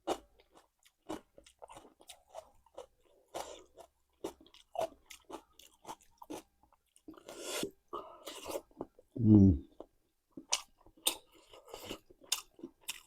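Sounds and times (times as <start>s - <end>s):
wet chewing and crunching: 0.0s - 9.1s, 10.4s - 13.0s.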